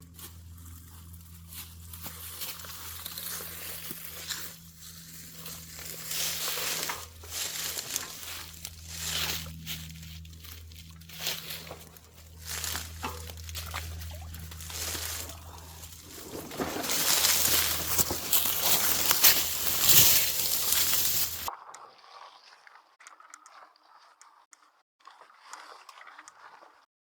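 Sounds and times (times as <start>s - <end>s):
rustling and crunching: 0.0s - 21.5s
steady low hum: 0.0s - 21.5s.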